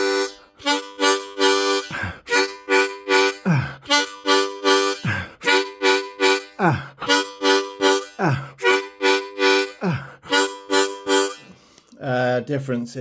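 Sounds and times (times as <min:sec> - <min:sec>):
harmonica chugging chord riff: 0:00.0 - 0:11.8.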